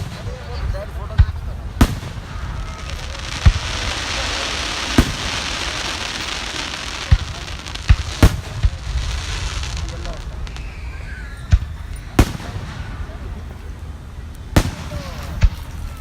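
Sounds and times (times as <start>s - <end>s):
fireworks booming: 0.0s - 16.0s
fireworks crackling hiss: 0.0s - 16.0s.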